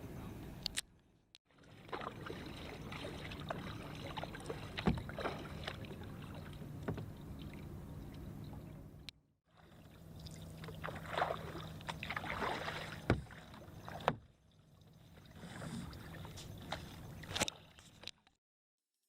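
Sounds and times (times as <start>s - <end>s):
paddle splashing in water: 1.5s - 8.8s, 9.5s - 18.0s
low hum: 1.6s - 17.4s.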